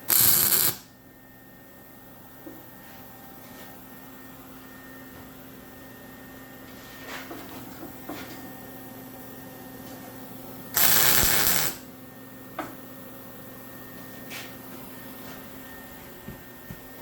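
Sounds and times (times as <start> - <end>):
welding arc hissing: 0.0 - 0.8, 10.8 - 11.8.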